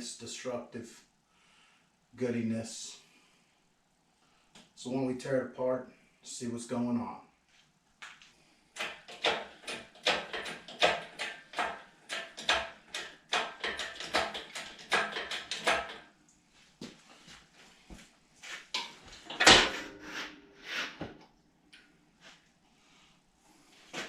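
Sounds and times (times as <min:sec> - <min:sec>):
hard objects clattering and knocking: 0:08.8 - 0:16.1, 0:18.8 - 0:21.2.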